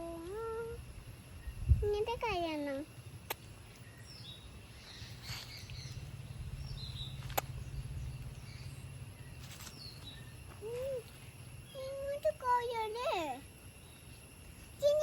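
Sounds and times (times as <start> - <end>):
steady low rumble: 0.7 - 12.4
birds chirping: 0.9 - 15.0
sharp click: 3.2 - 3.5.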